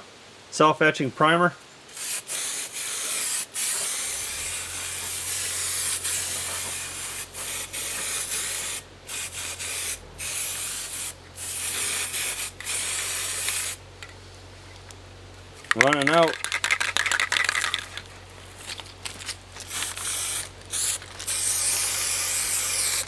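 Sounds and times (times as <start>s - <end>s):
aerosol can spraying: 1.9s - 13.8s, 19.6s - 23.0s.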